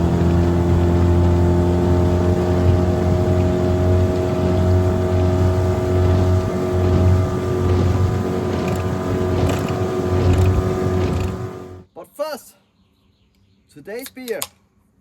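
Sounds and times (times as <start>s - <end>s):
outboard motor running: 0.0s - 11.9s.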